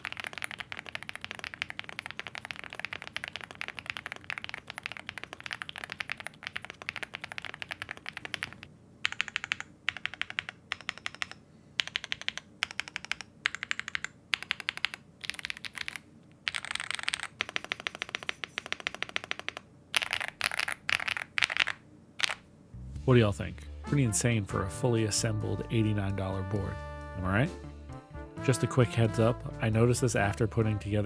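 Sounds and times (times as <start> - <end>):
mechanical keyboard typing: 0.0 - 22.4.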